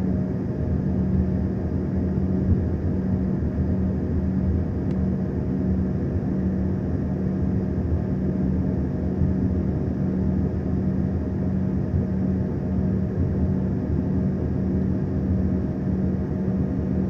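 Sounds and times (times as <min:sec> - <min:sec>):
airliner engine drone: 0:00.0 - 0:17.0
constant hum: 0:00.0 - 0:17.0.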